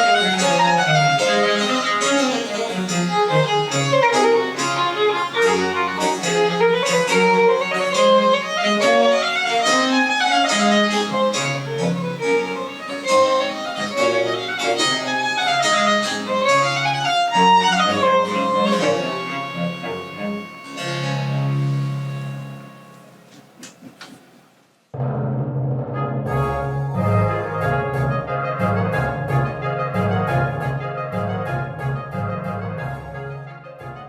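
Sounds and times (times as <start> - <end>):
violin playing running notes: 0.0 - 23.6.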